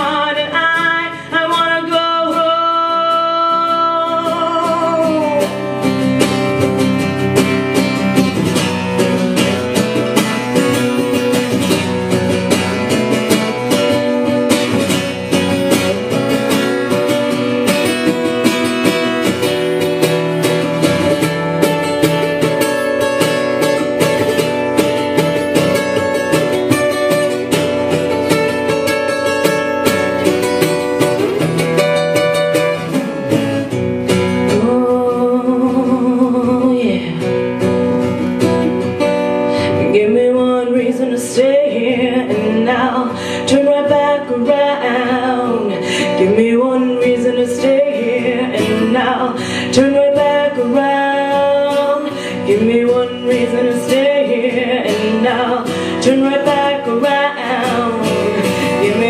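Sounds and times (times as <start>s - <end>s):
electric guitar: 0.0s - 59.0s
live band playing: 5.4s - 34.7s.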